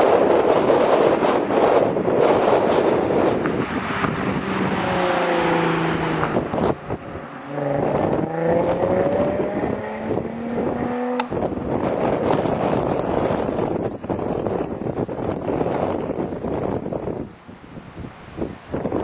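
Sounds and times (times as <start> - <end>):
wind noise on microphone: 0.0 - 19.0
car exhaust note accelerating: 2.2 - 14.4.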